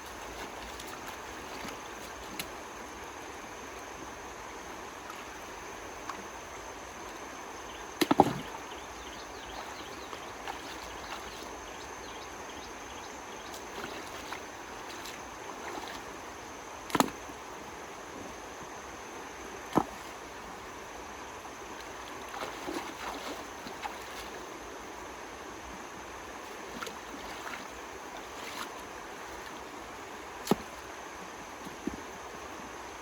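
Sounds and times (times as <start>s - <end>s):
running water: 0.0s - 18.2s, 18.8s - 33.0s
sharp water splashes: 8.0s - 8.8s, 22.2s - 24.4s.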